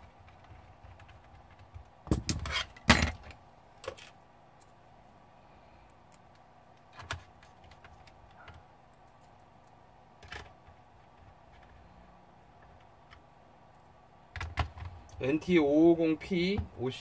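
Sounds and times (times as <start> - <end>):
small parts and tools clicking: 5.8 - 11.8.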